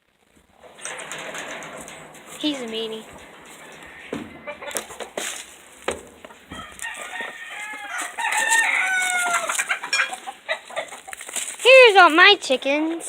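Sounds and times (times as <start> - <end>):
chickens clucking: 2.9 - 11.3
rooster crowing: 6.5 - 9.9.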